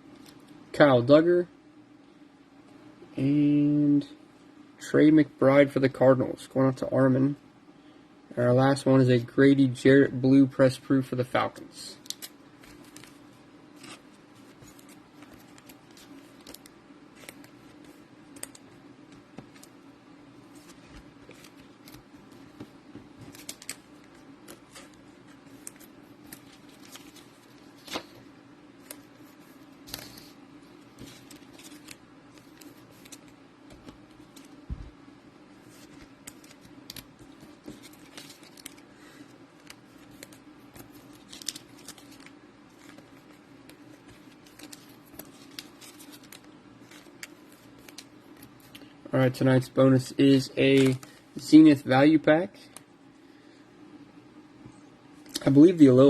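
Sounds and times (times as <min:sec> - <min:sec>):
steady low hum: 0:00.0 - 0:56.0
cards clicking and rustling: 0:12.0 - 0:13.2, 0:13.8 - 0:19.8, 0:20.5 - 0:28.2, 0:28.8 - 0:34.6, 0:35.6 - 0:38.8, 0:39.6 - 0:48.9, 0:50.3 - 0:51.2.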